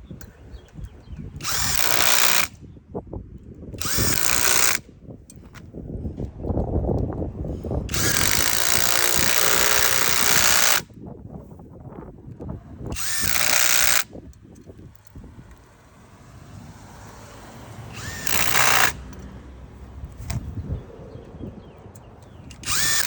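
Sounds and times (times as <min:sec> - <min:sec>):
impact driver hammering on bolts: 0:01.4 - 0:02.6, 0:03.8 - 0:04.8, 0:07.9 - 0:10.9, 0:12.8 - 0:15.6, 0:17.9 - 0:19.4, 0:22.3 - 0:23.0.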